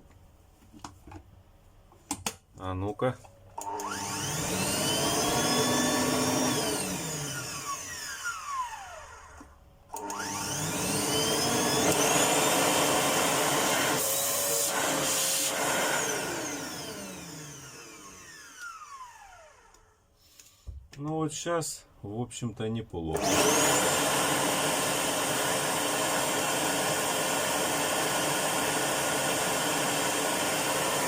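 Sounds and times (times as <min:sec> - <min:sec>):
vacuum cleaner motor whining: 0:03.6 - 0:19.9, 0:23.2 - 0:31.0.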